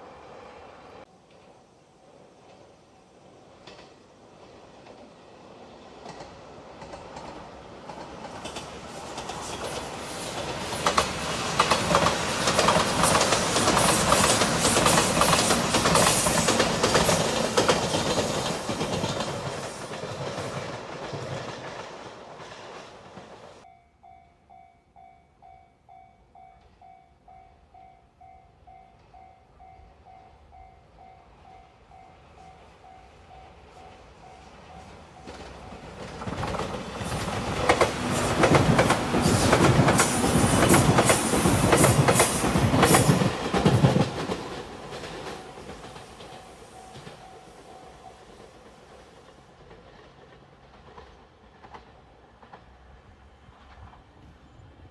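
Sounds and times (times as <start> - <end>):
train wheels clacking over rail joints: 6.0 - 23.6, 35.2 - 52.8
level crossing warning bell: 23.6 - 36.0, 46.3 - 48.4.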